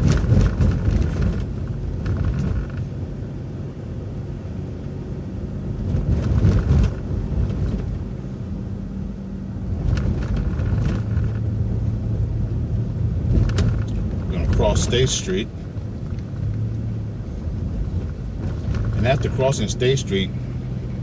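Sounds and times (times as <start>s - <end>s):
knocks and rattles: 0.0s - 2.8s, 13.2s - 14.6s, 17.6s - 19.1s
bus engine and road rumble: 0.0s - 21.0s.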